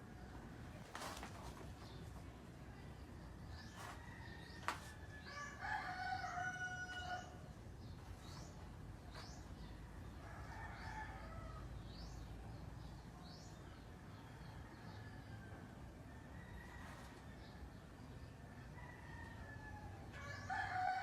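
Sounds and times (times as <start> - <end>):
birds chirping: 0.0 - 15.4.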